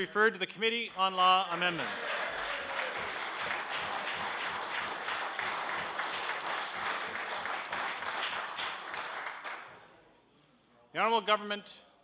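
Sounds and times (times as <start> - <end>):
hands clapping: 0.8 - 9.8.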